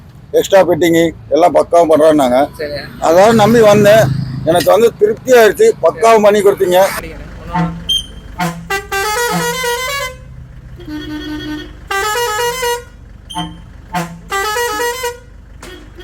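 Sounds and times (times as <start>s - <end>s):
air horn toots: 6.8s - 16.0s
musical air horn playing notes: 7.5s - 16.0s.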